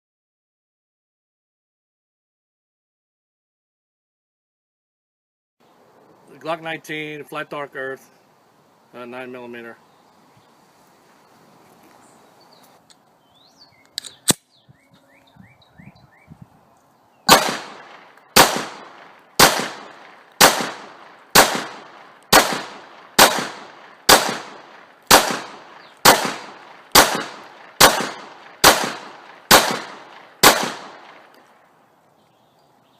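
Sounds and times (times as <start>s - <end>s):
sharp clicks: 13.8s - 14.5s
pistol shots with ringing echo: 17.3s - 31.3s.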